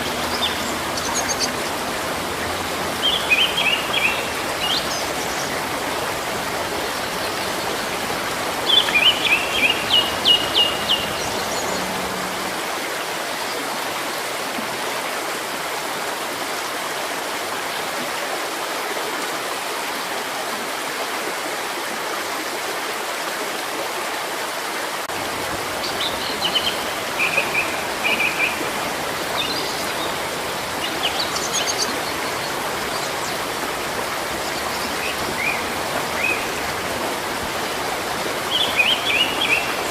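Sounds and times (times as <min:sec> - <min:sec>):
small birds chirping: 0:00.0 - 0:12.2
stream running water: 0:00.0 - 0:39.9.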